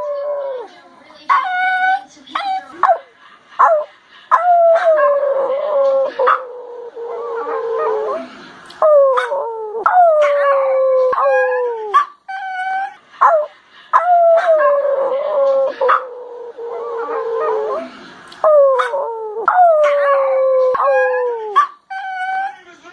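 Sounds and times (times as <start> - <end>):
puppies whining howls: 8.8 - 22.6.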